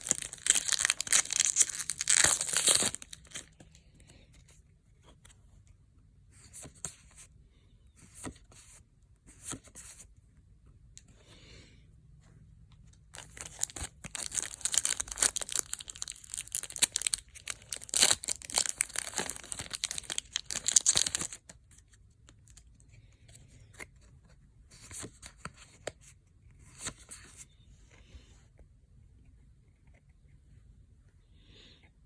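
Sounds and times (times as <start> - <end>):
foil wrapper tearing and crinkling: 0.0 - 3.4, 13.2 - 21.4.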